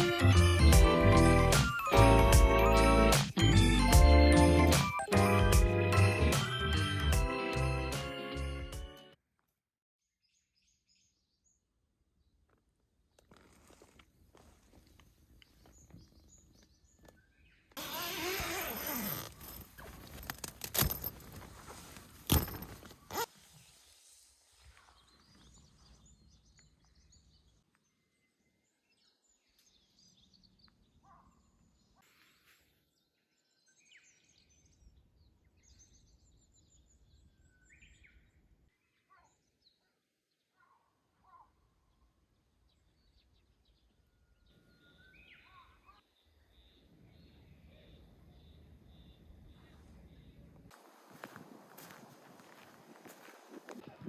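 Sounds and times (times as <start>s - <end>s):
faint bird chirps: 42.7s - 50.6s.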